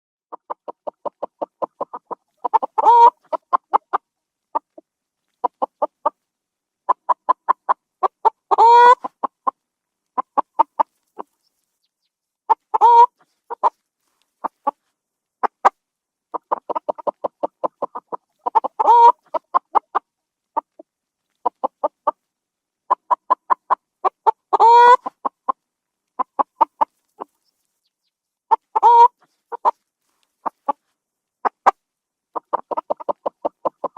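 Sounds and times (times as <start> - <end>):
chicken clucking and squawking: 0.3 - 4.8, 5.4 - 6.2, 6.9 - 9.6, 10.2 - 11.5, 12.5 - 13.8, 14.4 - 14.8, 15.4 - 22.2, 22.9 - 25.6, 26.2 - 27.5, 28.5 - 29.8, 30.4 - 30.8, 31.4 - 33.9.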